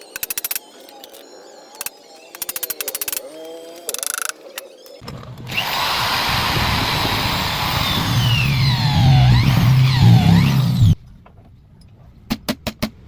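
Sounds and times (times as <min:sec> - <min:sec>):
rapid clicking: 0:00.0 - 0:05.0.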